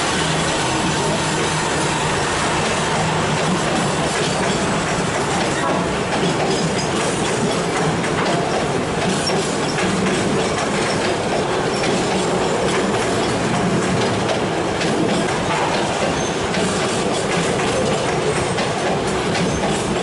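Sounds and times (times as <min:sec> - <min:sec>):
freight train wagons rolling: 0:00.0 - 0:20.0.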